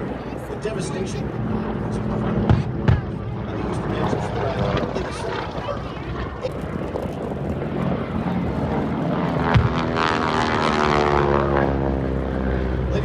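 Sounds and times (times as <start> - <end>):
propeller airplane flying past: 0.0 - 13.0.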